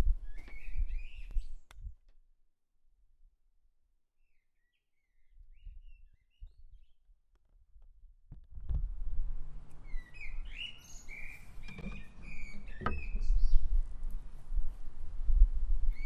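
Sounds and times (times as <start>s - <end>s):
birds chirping: 9.5s - 14.2s.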